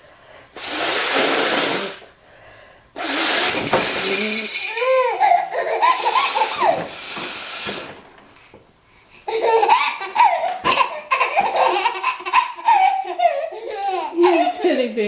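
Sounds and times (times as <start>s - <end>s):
nose blowing: 0.6s - 2.2s, 3.0s - 5.0s, 5.8s - 8.0s
baby laughing: 3.5s - 6.9s, 9.2s - 14.8s.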